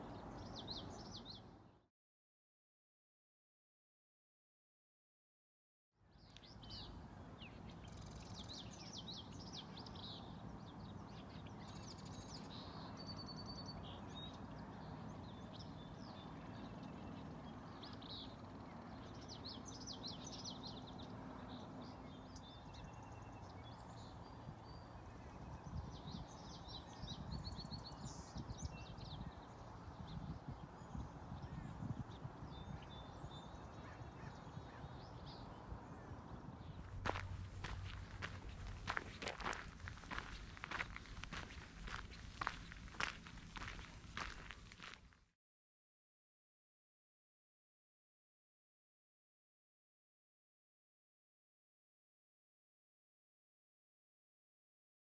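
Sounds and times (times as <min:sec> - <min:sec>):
low outdoor background noise: 0:00.0 - 0:01.8, 0:06.0 - 0:45.3
songbirds chirping and trilling: 0:00.0 - 0:01.8, 0:06.0 - 0:45.0.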